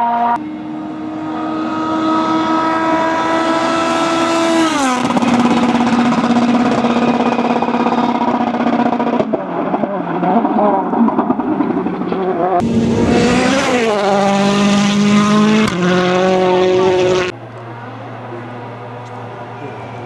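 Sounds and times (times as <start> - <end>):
rally car passing at high revs: 0.0 - 20.0.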